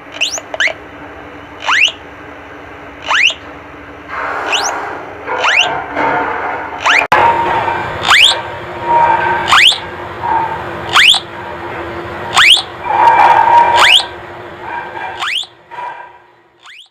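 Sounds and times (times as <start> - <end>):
rising electronic chirp: 1.6 - 2.0, 3.0 - 3.4, 5.4 - 5.8, 8.0 - 8.4, 9.5 - 9.8, 10.9 - 11.3, 12.3 - 12.7, 13.8 - 14.1, 15.2 - 15.5
steady electronic tone: 6.8 - 15.7.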